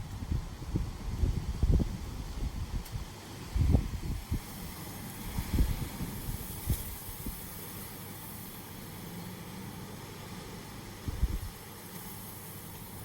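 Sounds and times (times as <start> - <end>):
wind buffeting microphone: 0.0 - 7.6, 11.0 - 11.7
rain hiss: 0.0 - 13.0.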